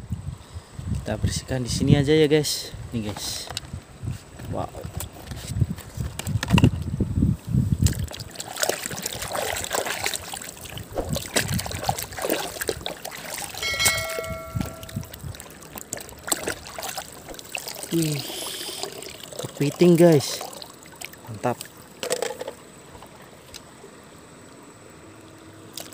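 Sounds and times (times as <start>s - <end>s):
water splashing and trickling: 7.7s - 23.7s, 25.3s - 25.9s
brief pitched tone: 13.6s - 15.1s
plastic toys clicking and knocking: 22.0s - 22.6s.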